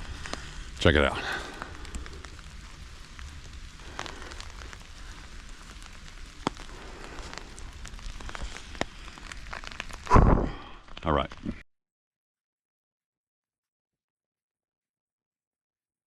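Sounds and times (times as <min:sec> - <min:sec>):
light rain falling: 0:00.0 - 0:11.6
low rumble: 0:00.0 - 0:11.6
raindrops ticking: 0:00.0 - 0:11.6.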